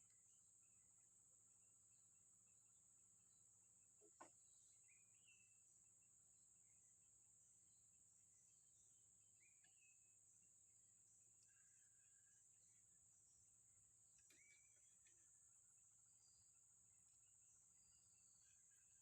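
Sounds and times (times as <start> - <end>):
faint high insect drone: 0.0 - 19.0
faint click: 14.2 - 15.2
faint short bird chirps: 14.2 - 15.2.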